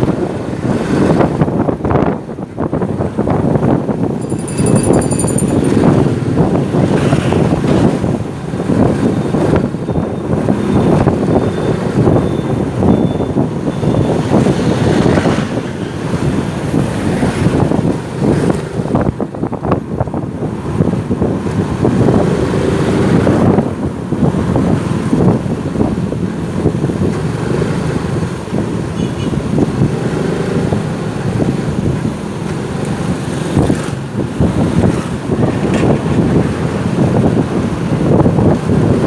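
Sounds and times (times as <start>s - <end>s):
wind buffeting on microphone: 0.0s - 39.0s
motorcycle engine running: 4.2s - 8.3s.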